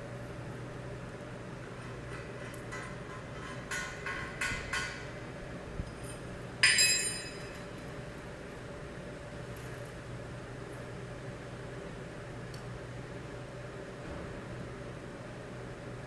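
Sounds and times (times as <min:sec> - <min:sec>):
metal clang ringing: 0:06.6 - 0:07.7.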